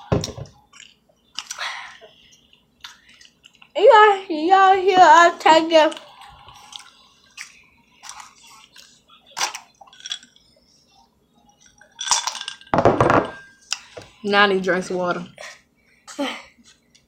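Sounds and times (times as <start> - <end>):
people chewing food: 0.0 - 3.8, 5.8 - 12.0
cutlery and dishes clinking: 6.7 - 10.5, 11.6 - 14.0.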